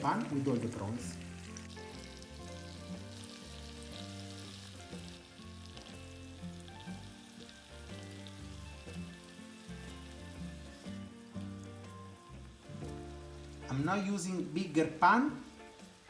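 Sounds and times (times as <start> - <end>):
background music: 0.0 - 16.0
prawns sizzling in oil: 0.0 - 16.0.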